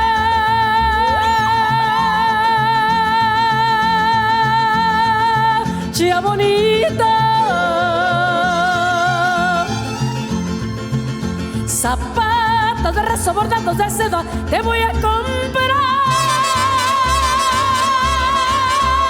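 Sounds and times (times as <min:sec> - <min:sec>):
repeating bass guitar pattern: 0:00.0 - 0:07.1, 0:09.2 - 0:19.0
mariachi ensemble playing: 0:07.8 - 0:12.2, 0:15.9 - 0:19.0.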